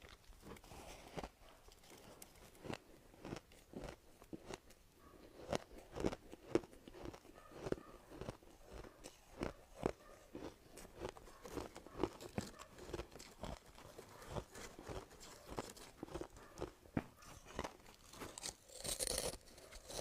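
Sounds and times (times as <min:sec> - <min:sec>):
ice being chewed: 0:00.0 - 0:20.0.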